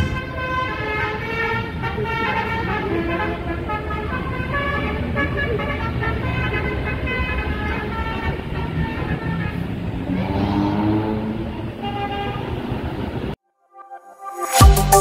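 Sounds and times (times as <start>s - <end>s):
bus musical horn playing a tune: 0.0s - 10.6s, 11.8s - 12.6s
bus engine rumbling: 0.0s - 13.4s.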